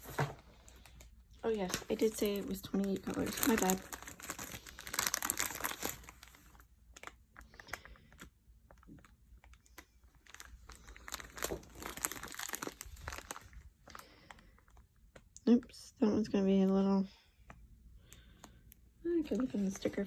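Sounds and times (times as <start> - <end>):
plastic bags crinkling: 0.0 - 14.9.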